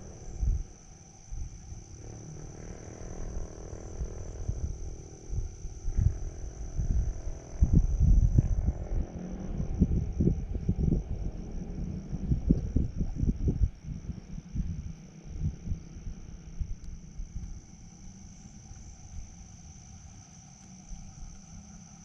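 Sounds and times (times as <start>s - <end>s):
crickets trilling: 0.0s - 22.0s
low rumbles and thuds: 4.0s - 17.7s.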